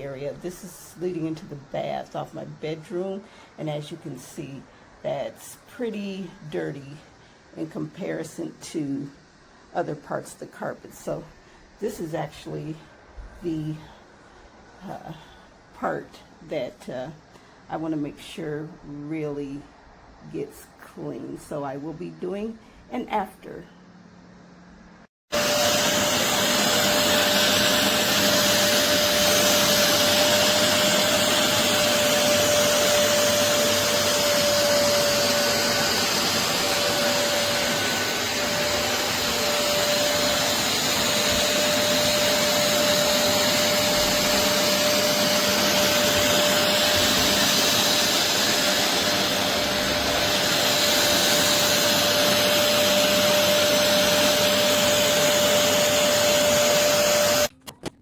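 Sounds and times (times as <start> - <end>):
suction motor running: 25.4 - 57.5.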